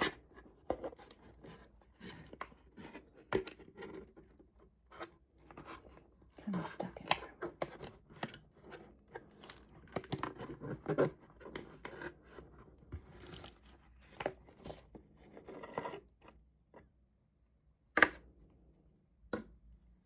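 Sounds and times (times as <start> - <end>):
cardboard and paper rustling: 8.0 - 16.0.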